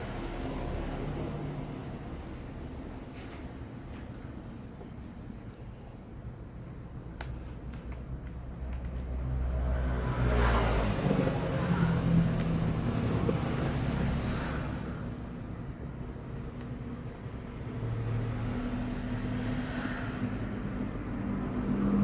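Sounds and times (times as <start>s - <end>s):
motor vehicle passing by: 9.0s - 22.0s.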